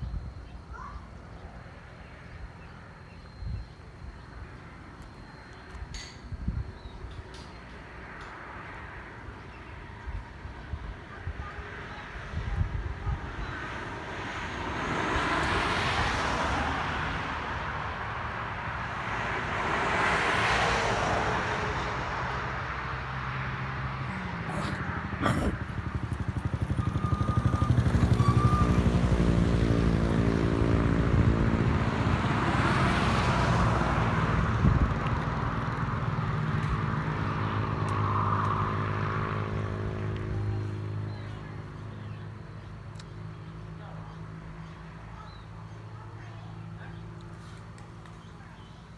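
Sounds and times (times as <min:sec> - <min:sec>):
vehicles passing: 0:00.0 - 0:48.9
heavy engine pulling uphill: 0:23.6 - 0:33.0.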